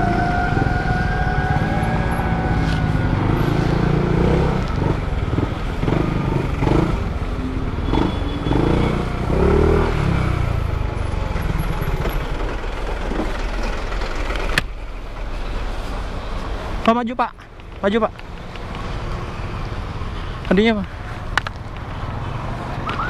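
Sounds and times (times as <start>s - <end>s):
motorcycle engine running: 0.0s - 16.1s
road traffic noise: 0.0s - 23.0s.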